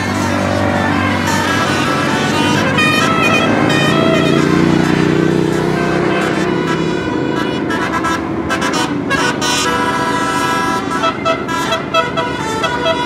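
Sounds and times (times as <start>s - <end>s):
bus engine running: 0.0s - 13.0s
multi-tone bus horn tune: 0.0s - 13.0s.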